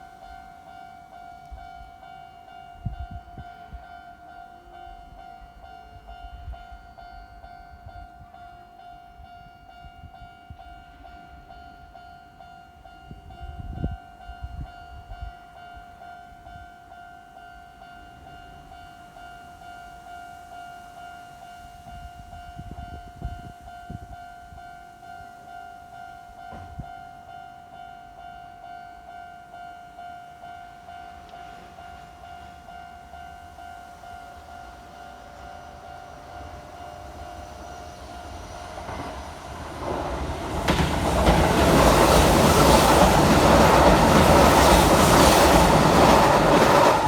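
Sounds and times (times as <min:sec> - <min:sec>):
train wheels rumbling: 0:30.7 - 0:47.0.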